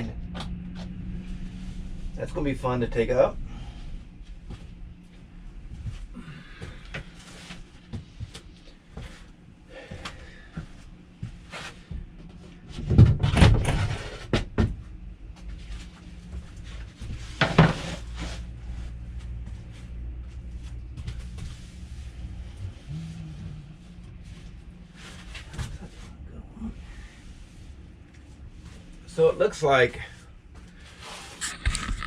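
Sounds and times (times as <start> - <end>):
demolition clunks and knocks: 12.7 - 14.8
thumps and clatter: 12.7 - 14.9, 17.0 - 18.1.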